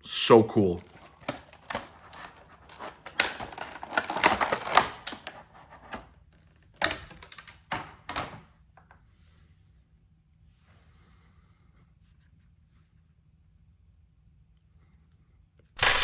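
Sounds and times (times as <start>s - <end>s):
cardboard packaging clicks and rustles: 0.8s - 8.3s.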